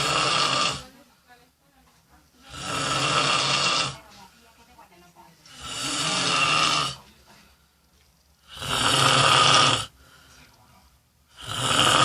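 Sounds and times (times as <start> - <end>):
person snoring loudly: 0.0 - 0.8, 2.5 - 4.0, 5.6 - 7.0, 8.5 - 9.9, 11.3 - 12.0.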